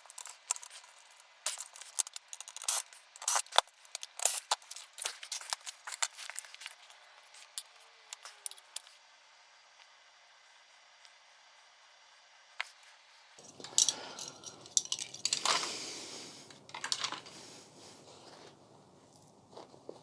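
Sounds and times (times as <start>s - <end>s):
plastic parts clicking and clattering: 0.0s - 9.0s, 13.4s - 15.8s, 16.5s - 17.4s.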